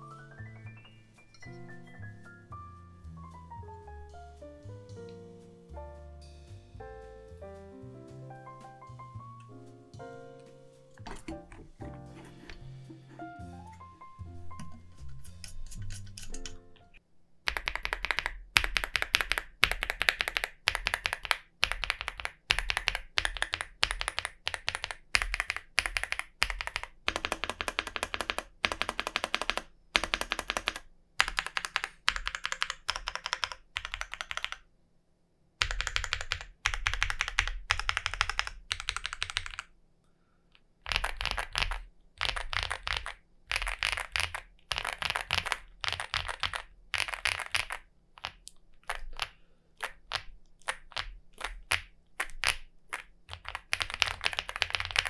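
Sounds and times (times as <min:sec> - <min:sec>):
mechanical keyboard typing: 0:17.5 - 0:34.6, 0:35.6 - 0:39.7, 0:40.9 - 0:55.0.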